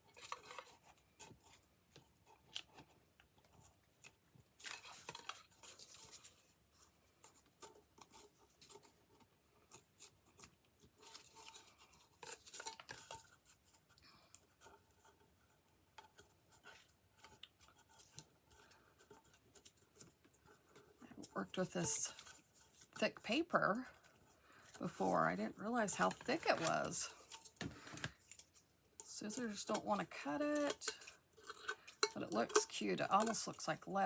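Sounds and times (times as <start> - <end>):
paper clicks and rustles: 0.0 - 21.3.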